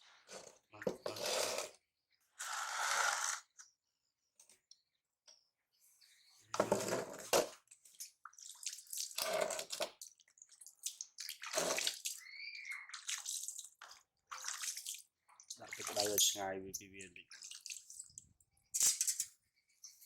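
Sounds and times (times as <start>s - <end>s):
water splashing and pouring: 6.6s - 16.2s, 17.2s - 18.3s.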